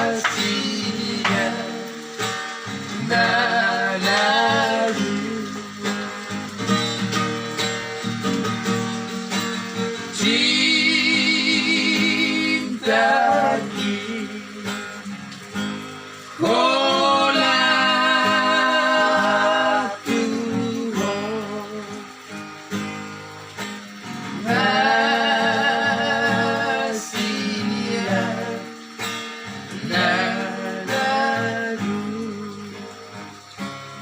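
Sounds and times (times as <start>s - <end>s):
person singing with vibrato: 0.0s - 5.8s, 10.1s - 15.0s, 16.2s - 22.2s, 24.3s - 29.0s, 29.6s - 33.0s
acoustic guitar strumming: 0.0s - 34.0s.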